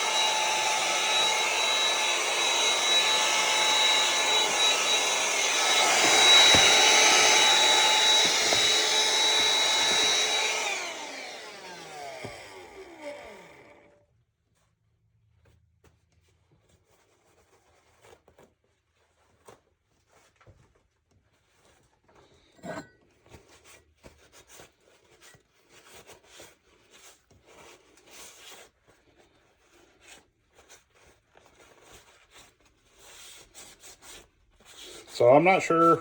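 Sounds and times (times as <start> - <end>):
small knocks on workbench: 6.0 - 6.8.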